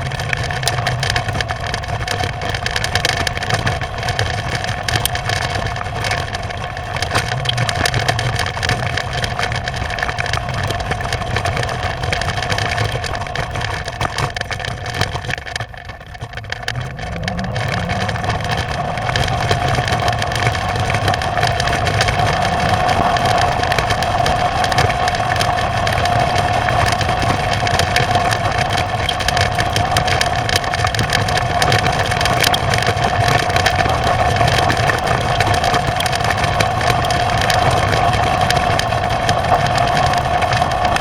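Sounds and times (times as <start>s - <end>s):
crackling impacts against dome: 0.0s - 41.0s
rush of wind: 16.3s - 41.0s.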